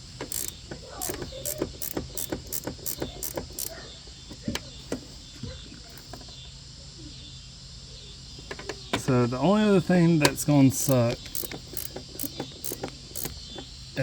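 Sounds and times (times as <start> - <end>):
ratchet wrench clicking: 0.0 - 3.8, 10.7 - 13.7.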